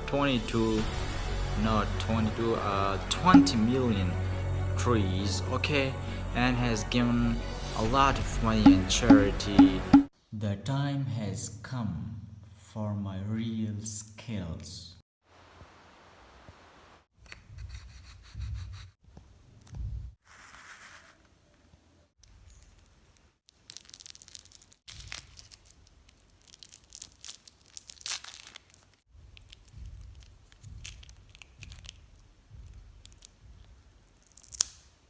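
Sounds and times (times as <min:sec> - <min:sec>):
paper rubbing and rustling: 0:20.2 - 0:21.3.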